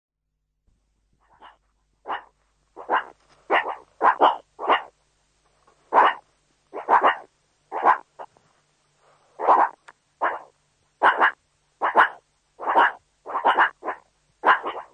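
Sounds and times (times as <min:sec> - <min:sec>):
dog barking: 0:01.2 - 0:04.9, 0:05.9 - 0:08.1, 0:09.4 - 0:14.9.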